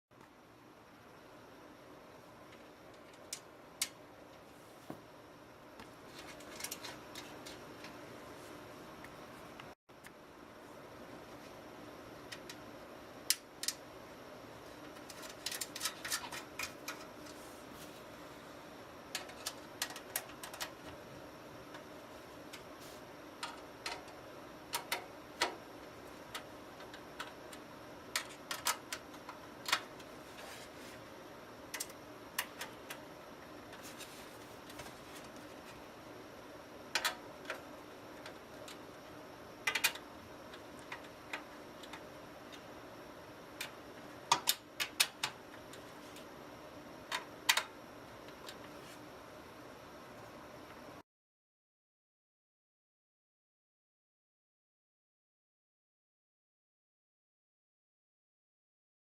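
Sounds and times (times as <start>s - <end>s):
faint hum: 0.1s - 51.0s.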